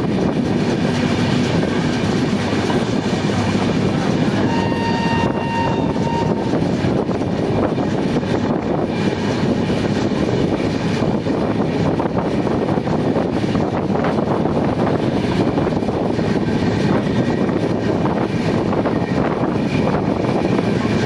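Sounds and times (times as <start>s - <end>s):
train running over rails: 0.0s - 21.0s
high tone: 4.3s - 6.6s.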